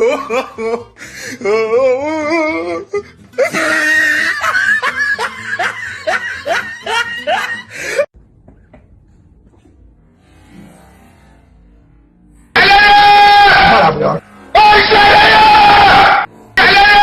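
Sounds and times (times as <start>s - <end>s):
person laughing hard: 0.0s - 8.1s.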